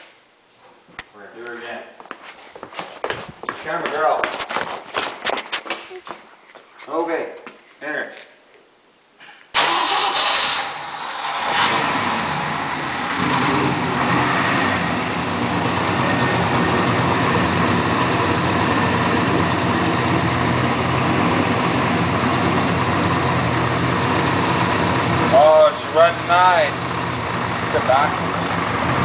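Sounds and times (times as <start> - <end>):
man talking: 3.6 - 4.4, 6.8 - 8.3, 25.2 - 26.9, 27.6 - 28.2
engine starting and running: 9.6 - 29.0.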